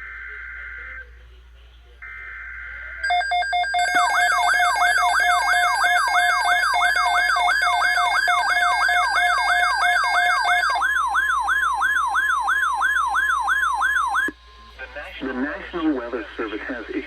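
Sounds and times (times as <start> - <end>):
electronic siren alarm: 2.0 - 14.4
steady beeping tones: 3.0 - 16.2.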